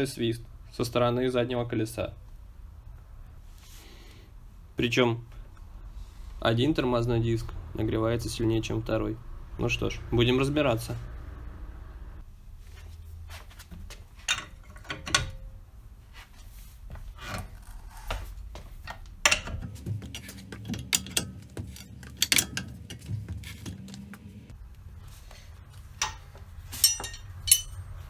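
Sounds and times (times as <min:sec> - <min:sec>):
tools clicking and scraping metal: 0:14.2 - 0:15.5, 0:18.8 - 0:23.8, 0:25.8 - 0:28.0
sharp metal clack: 0:14.3 - 0:15.6, 0:18.9 - 0:19.8, 0:20.8 - 0:23.0, 0:26.0 - 0:28.0.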